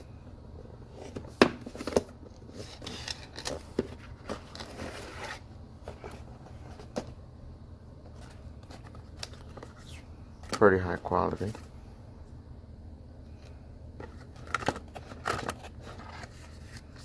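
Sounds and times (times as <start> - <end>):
packaging rustling and crinkling: 1.0 - 7.0, 14.0 - 17.0.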